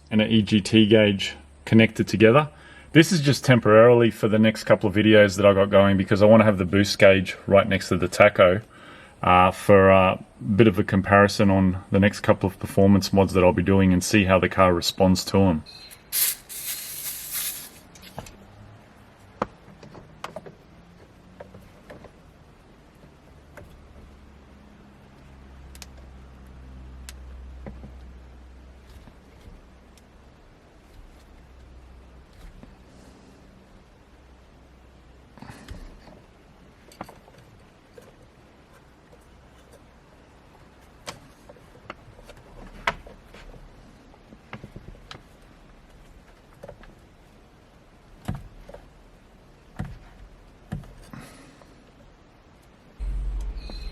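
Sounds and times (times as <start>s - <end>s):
faint low hum: 18.2s - 53.9s.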